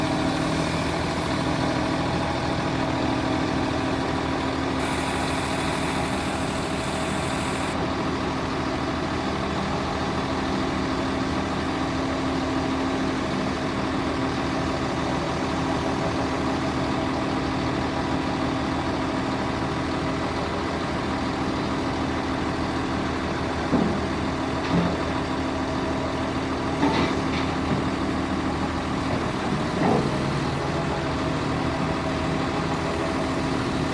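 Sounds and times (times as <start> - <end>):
diesel engine idling: 0.0 - 12.2.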